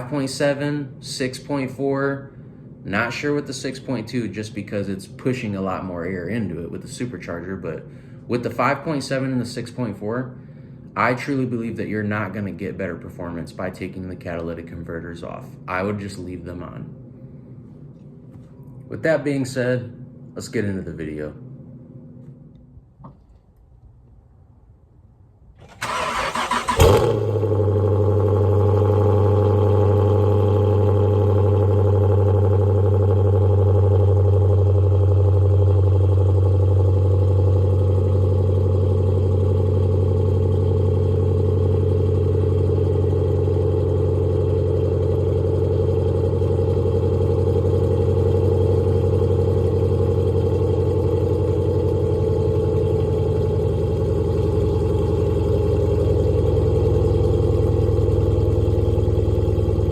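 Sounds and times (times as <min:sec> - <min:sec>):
car engine idling: 0:25.5 - 0:59.9.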